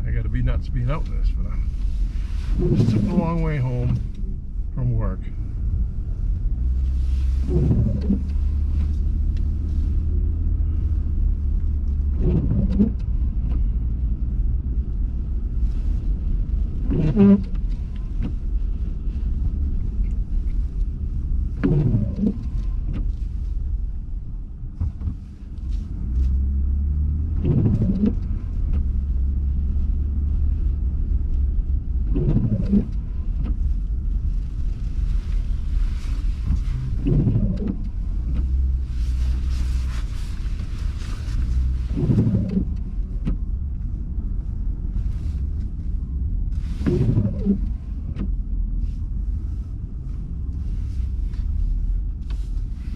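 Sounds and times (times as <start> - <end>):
engine and road rumble: 0.0 - 52.9
windshield wipers sweeping: 0.1 - 52.9.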